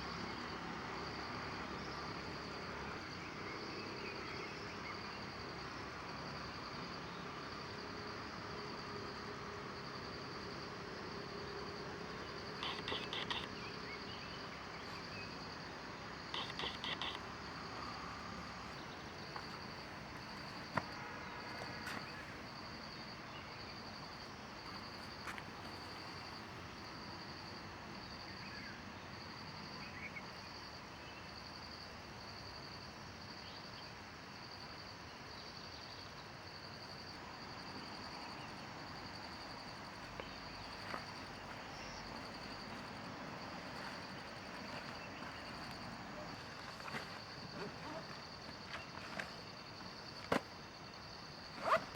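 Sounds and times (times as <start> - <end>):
background hiss: 0.0 - 51.9
insect chirping: 0.0 - 51.9
faint ticks: 12.4 - 13.7, 16.3 - 18.2.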